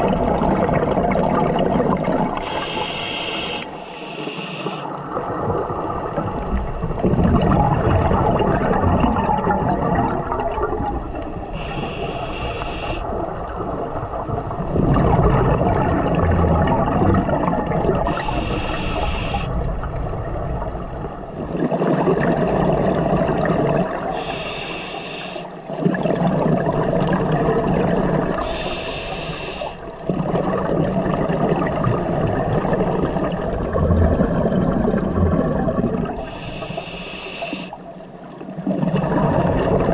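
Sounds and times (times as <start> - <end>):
gurgling exhaust bubbles: 0.0 - 2.5, 5.0 - 11.6, 13.0 - 24.2, 25.7 - 28.6, 29.8 - 36.3, 38.5 - 39.9
regulator inhale hiss: 2.4 - 5.0, 11.5 - 13.1, 18.1 - 19.6, 24.1 - 25.6, 28.4 - 29.9, 36.2 - 37.8.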